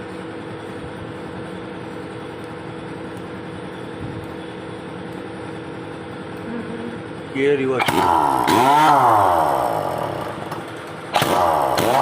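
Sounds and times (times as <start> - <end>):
impact wrench motor whine: 7.8 - 12.0.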